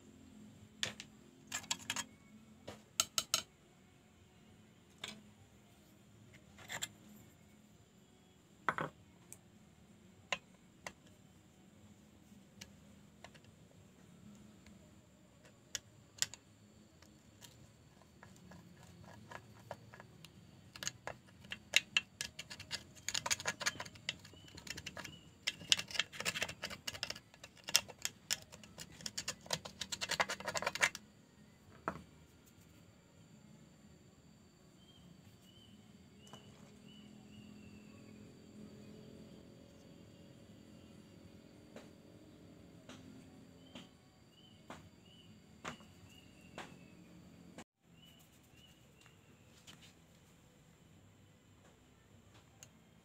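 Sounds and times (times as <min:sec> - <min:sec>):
hand tools clicking and tapping metal: 0:00.8 - 0:02.2, 0:03.0 - 0:03.5, 0:17.0 - 0:31.0.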